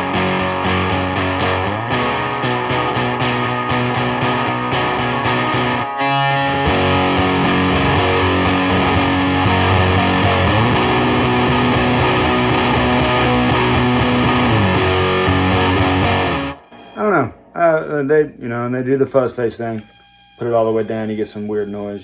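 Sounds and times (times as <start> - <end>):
fuzzed electric guitar chords: 0.0 - 16.9.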